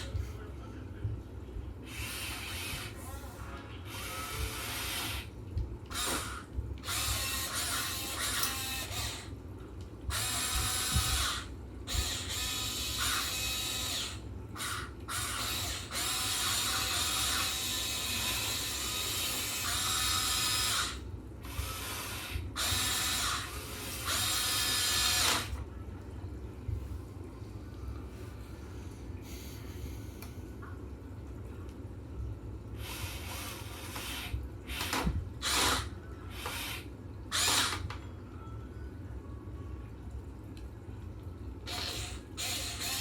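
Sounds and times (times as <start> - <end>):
electric gear motors whirring: 3.9 - 5.3, 5.9 - 9.3, 10.1 - 25.6, 32.8 - 37.9.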